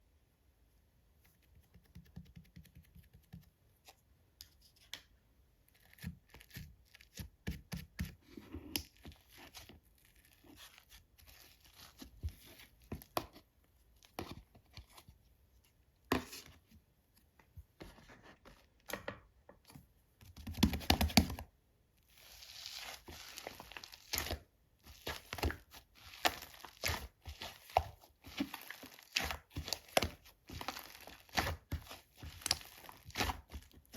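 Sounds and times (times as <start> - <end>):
slime squishing and crackling: 22.2 - 33.9.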